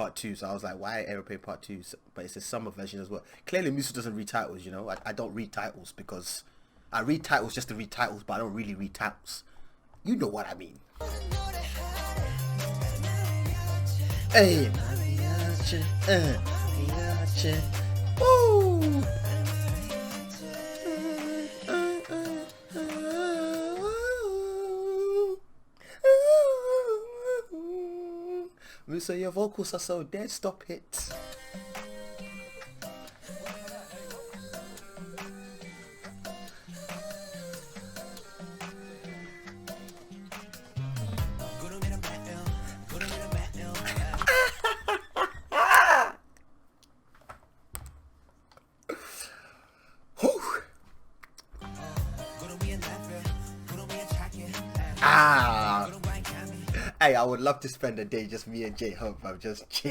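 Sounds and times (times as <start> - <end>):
music: 11.0 - 24.0, 31.0 - 44.3, 51.6 - 57.0
man singing held wavering notes: 11.0 - 25.4, 51.7 - 56.8
sliding shouts or screams: 45.5 - 46.2
breathy sound: 48.9 - 50.4.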